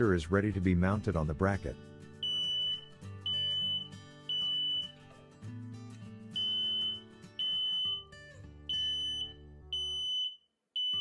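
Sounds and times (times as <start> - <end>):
acoustic guitar music: 0.0 - 10.2
smoke detector beeping: 2.2 - 5.0, 6.4 - 8.1, 8.7 - 11.0.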